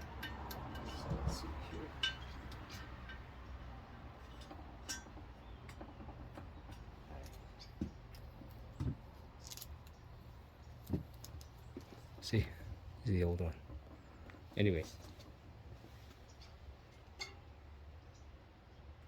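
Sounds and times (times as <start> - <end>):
light metallic clicks and taps: 0.0 - 3.3.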